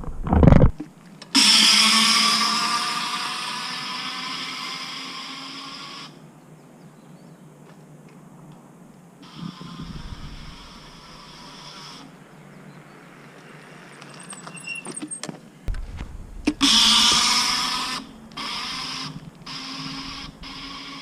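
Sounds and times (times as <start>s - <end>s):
scooter wheel grinding whir: 1.3s - 6.2s, 9.2s - 21.0s.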